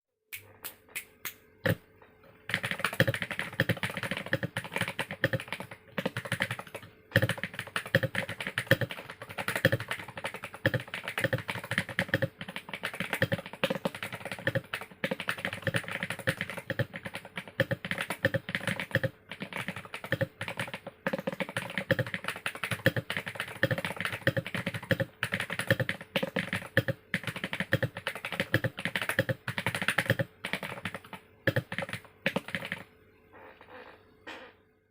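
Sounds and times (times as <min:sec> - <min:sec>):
fast mechanical keyboard typing: 0:02.4 - 0:32.9.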